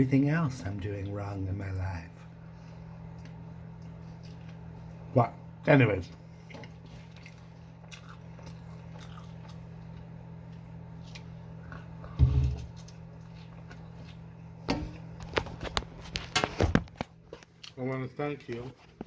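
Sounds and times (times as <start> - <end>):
steady low hum: 0.0 - 19.0
person chewing food: 2.7 - 5.1, 6.3 - 16.4.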